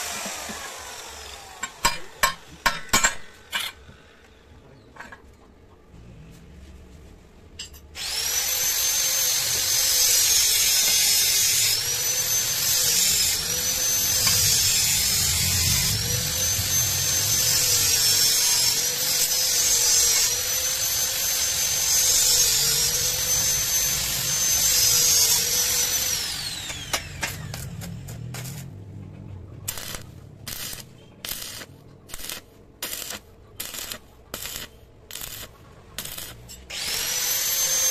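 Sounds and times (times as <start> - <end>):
electric power tool whining: 0.0 - 1.8, 8.0 - 28.6, 36.1 - 37.9.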